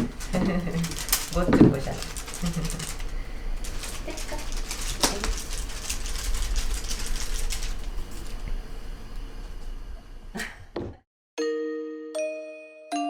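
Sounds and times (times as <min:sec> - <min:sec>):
paws and toys tapping and scuffling: 0:00.0 - 0:08.4
room hum: 0:00.0 - 0:11.0.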